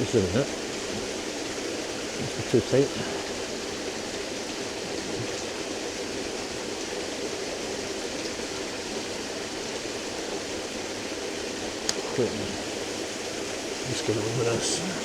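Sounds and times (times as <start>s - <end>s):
waterfall rushing: 0.0s - 15.0s.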